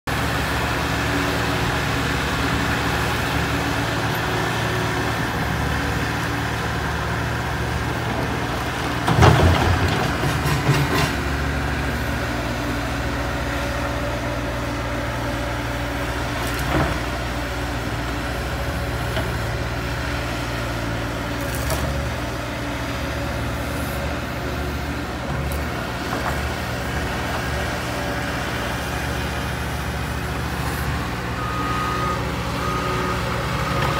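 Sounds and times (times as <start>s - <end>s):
diesel machinery working: 0.1s - 33.9s
loud crash and clatter: 9.1s - 11.2s.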